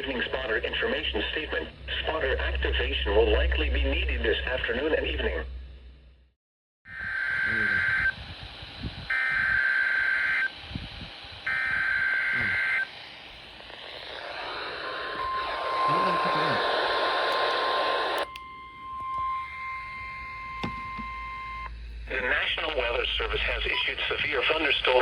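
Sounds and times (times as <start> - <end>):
steady alarm tone: 6.9 - 10.6, 11.3 - 23.9
radio hiss: 6.9 - 18.3, 22.0 - 25.0
warbling digital data bursts: 11.5 - 12.9, 14.0 - 18.2.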